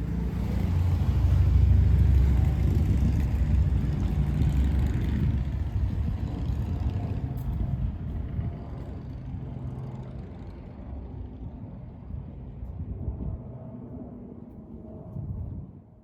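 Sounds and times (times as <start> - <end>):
passing vehicle rumble: 0.0 - 8.5.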